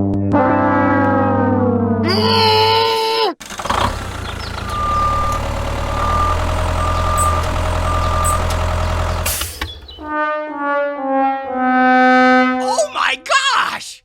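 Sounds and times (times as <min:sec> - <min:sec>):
truck engine running: 0:03.4 - 0:10.1
reversing alarm beeping: 0:04.7 - 0:09.9.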